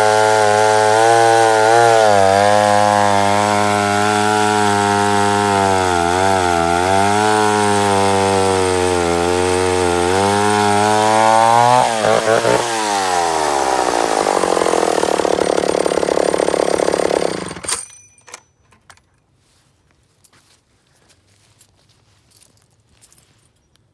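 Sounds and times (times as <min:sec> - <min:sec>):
chainsaw running: 0:00.0 - 0:17.8.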